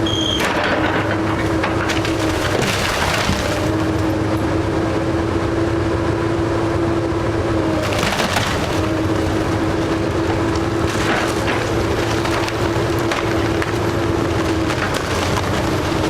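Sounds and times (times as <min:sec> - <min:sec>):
heavy machine engine whining: 0:00.0 - 0:16.0
timber splintering and cracking: 0:00.5 - 0:03.9, 0:07.8 - 0:09.4, 0:10.4 - 0:16.0.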